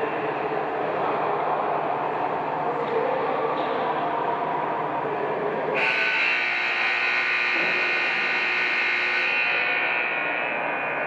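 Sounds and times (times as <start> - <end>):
loud electric horn blast: 5.8 - 10.4.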